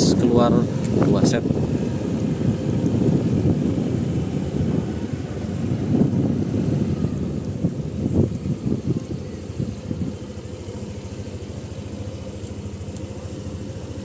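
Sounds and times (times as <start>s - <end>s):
wind buffeting microphone: 0.0s - 11.4s
low uneven rumble: 0.0s - 14.0s.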